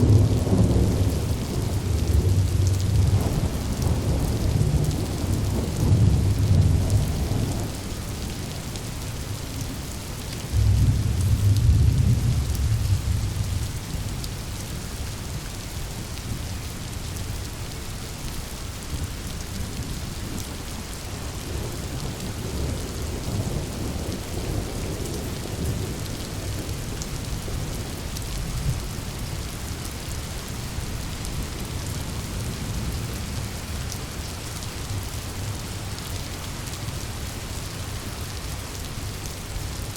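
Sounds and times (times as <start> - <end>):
rolling thunder: 0.0 - 8.3, 10.5 - 14.1
heavy rain falling: 0.0 - 39.9.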